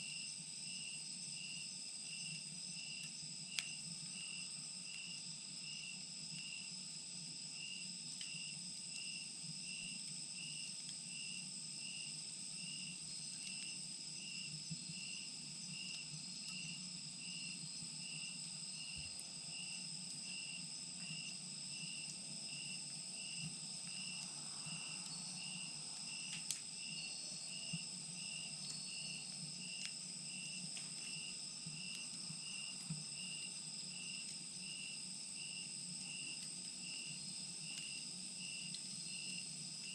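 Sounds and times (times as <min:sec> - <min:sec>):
insects trilling: 0:07.6 - 0:39.9
wood fire crackling: 0:17.8 - 0:39.9.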